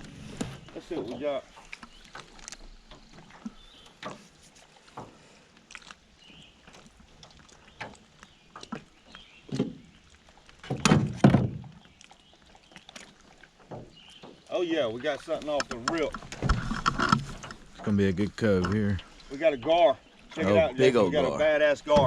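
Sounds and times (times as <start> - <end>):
paddle knocking on boat hull: 10.7 - 11.7.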